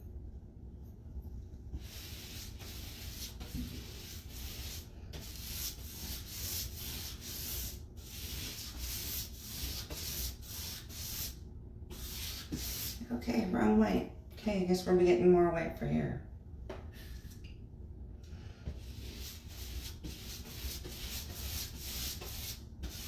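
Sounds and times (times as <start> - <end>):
paint rubbing on plaster wall: 1.7 - 13.2, 18.6 - 23.0.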